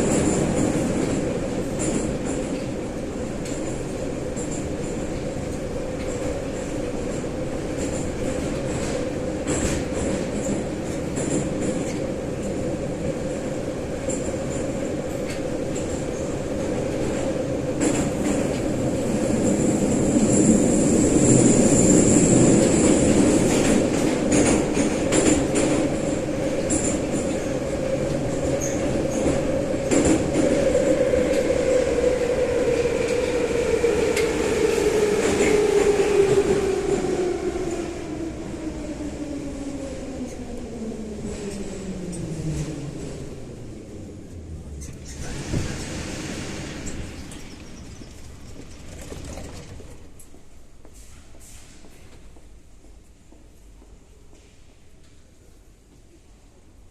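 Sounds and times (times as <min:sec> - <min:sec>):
wheels clicking and rattling: 0:46.8 - 0:50.5.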